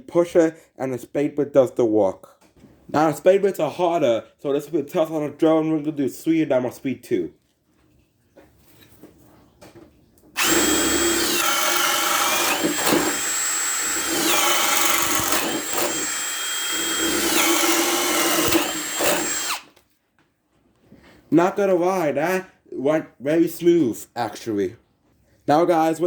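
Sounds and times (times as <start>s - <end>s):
drill motor whine: 10.4s - 19.7s.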